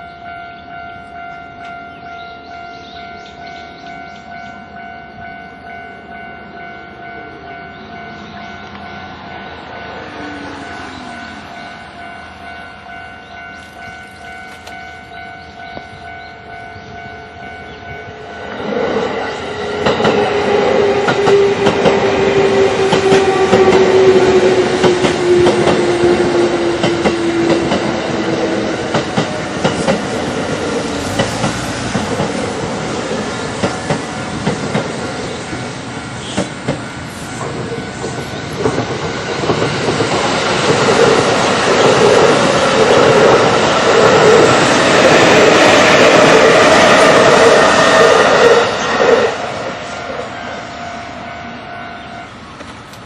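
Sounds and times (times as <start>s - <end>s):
level crossing alarm clanging: 0.0s - 18.6s
train wheels clattering on rails: 7.5s - 50.3s
long falling tone: 8.6s - 12.5s.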